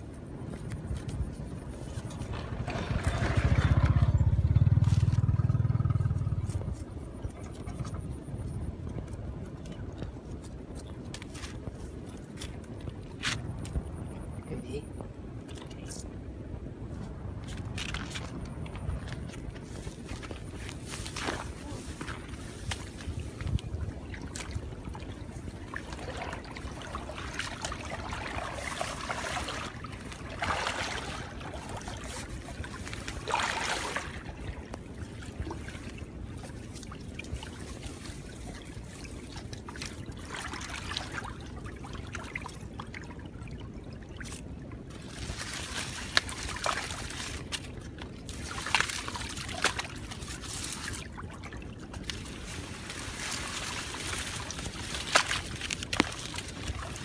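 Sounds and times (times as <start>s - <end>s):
water trickling and sloshing: 0.0s - 16.1s, 16.9s - 57.0s.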